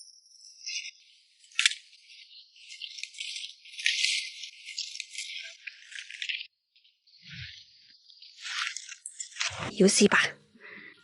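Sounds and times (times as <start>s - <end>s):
branches and fruit rattling: 0.6s - 6.5s, 7.5s - 10.1s.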